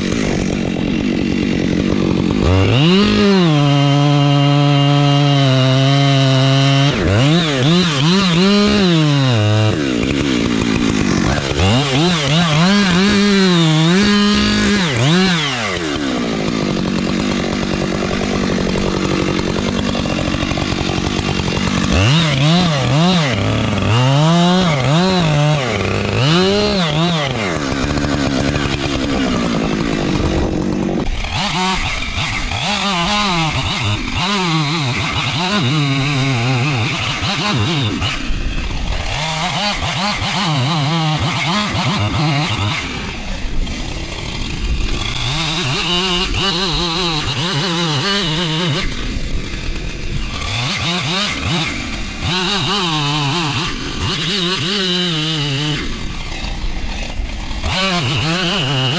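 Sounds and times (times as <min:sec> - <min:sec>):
chainsaw engine revving: 0:00.0 - 0:58.9.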